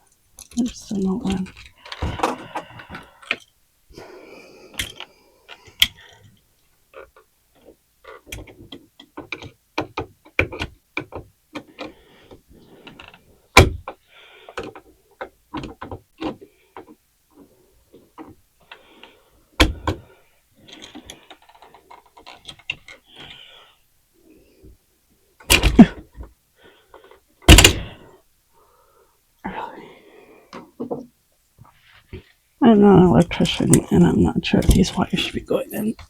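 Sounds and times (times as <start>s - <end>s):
wiring and switch clicks and rattles: 0.0s - 3.5s, 4.7s - 23.4s, 25.4s - 26.4s, 27.0s - 28.0s, 32.1s - 36.0s.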